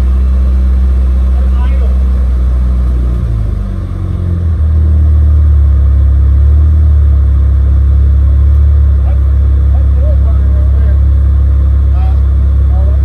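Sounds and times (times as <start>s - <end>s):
car engine starting and running: 0.0s - 13.0s.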